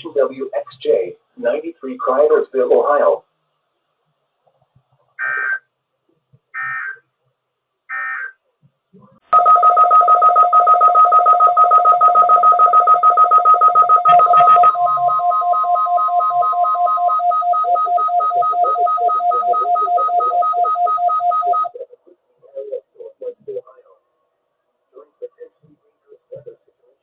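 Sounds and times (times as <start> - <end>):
electronic two-tone alarm beeping: 5.2 - 5.6, 6.6 - 7.0, 7.9 - 8.4, 9.3 - 21.8
steady alarm tone: 9.4 - 21.8.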